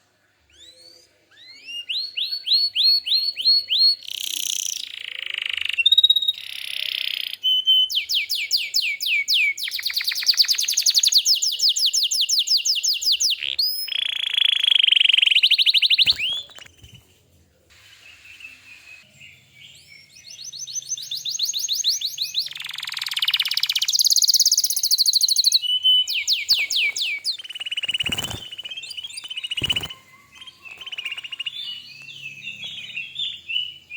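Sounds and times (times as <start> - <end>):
canary singing trills: 0.5 - 33.9.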